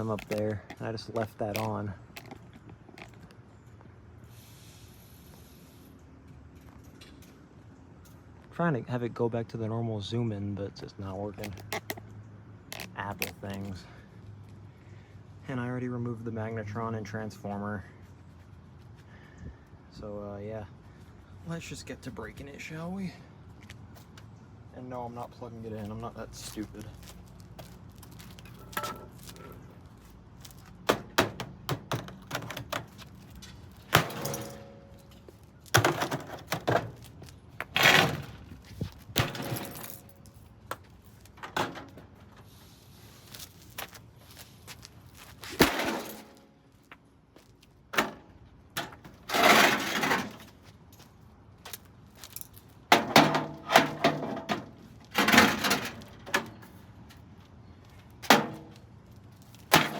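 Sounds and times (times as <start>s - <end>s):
parts cracking and breaking: 0.0s - 3.4s.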